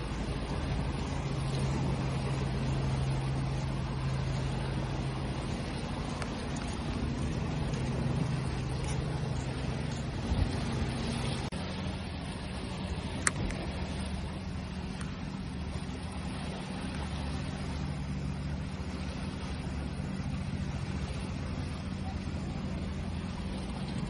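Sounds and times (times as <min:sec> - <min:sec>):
low engine hum: 0:00.0 - 0:24.0
ocean waves washing: 0:00.0 - 0:24.0.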